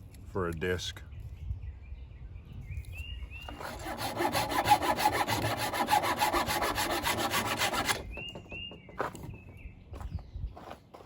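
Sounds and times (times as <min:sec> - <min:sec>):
bird chirps: 0:01.0 - 0:03.6, 0:08.0 - 0:10.7
hand saw cutting wood: 0:03.5 - 0:08.3.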